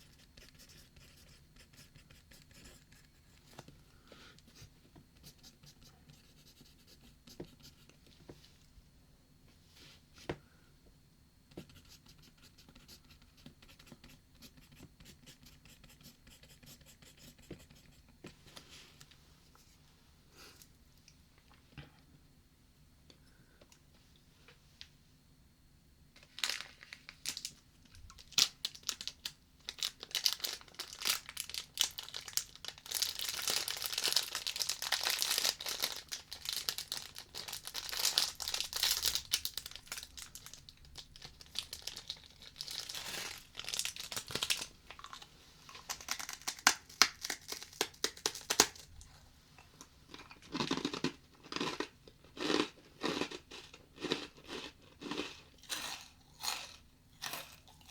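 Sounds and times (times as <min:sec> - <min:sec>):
plastic wrapper crinkling: 0:26.2 - 0:48.9
cracker crunching: 0:50.1 - 0:57.9.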